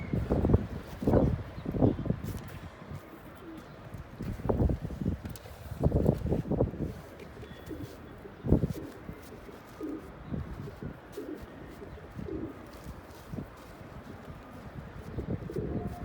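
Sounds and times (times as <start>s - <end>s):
pigeons cooing: 3.2s - 3.8s, 7.2s - 16.0s.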